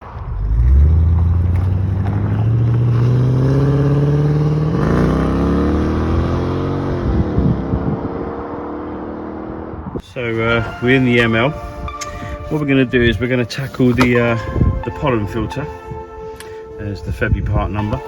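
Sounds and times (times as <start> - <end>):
car engine accelerating and passing: 0.0 - 10.0.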